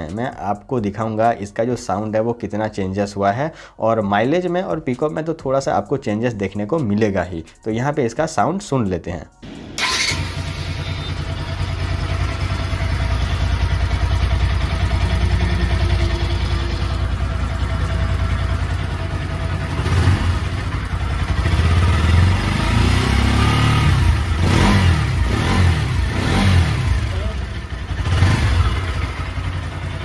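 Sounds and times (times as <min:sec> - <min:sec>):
motorcycle engine idling and revving: 0:09.4 - 0:30.0.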